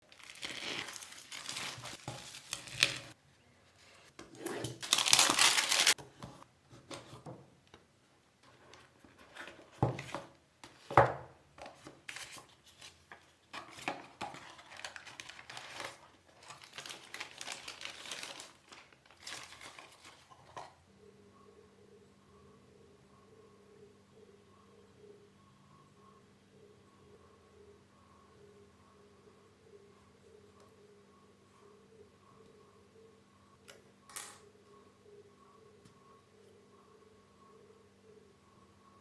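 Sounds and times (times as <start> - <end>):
wrapping crinkling and rustling: 0.0 - 3.2, 4.4 - 6.0, 11.6 - 20.8
paper tearing: 4.5 - 6.0.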